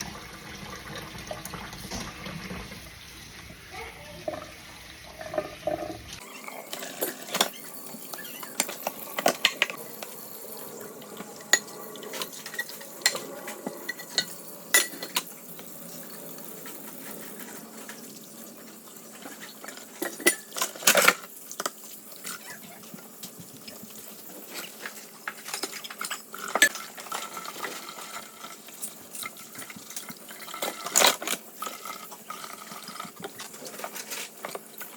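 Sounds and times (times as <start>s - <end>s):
dishes and cutlery clinking: 6.3s - 10.2s, 11.2s - 15.3s, 19.2s - 22.5s, 24.5s - 34.9s.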